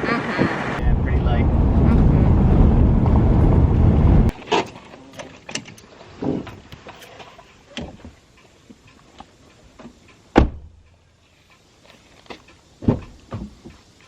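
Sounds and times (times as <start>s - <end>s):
knocks and thumps: 12.8s - 13.8s.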